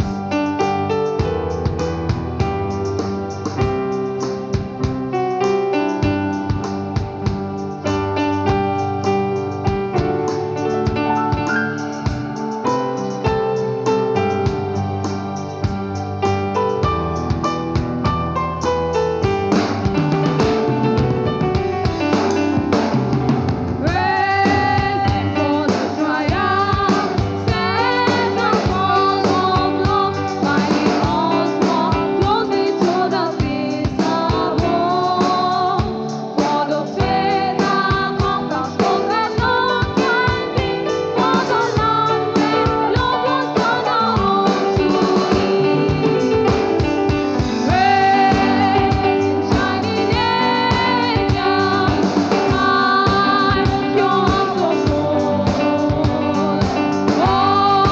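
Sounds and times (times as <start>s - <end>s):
drum kit: 0.0s - 57.9s
guitar: 0.0s - 57.9s
person singing: 23.8s - 57.9s.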